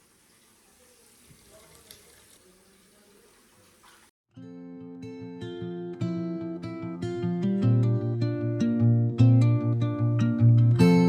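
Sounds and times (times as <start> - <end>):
acoustic guitar plucking and strumming: 4.4 - 11.0.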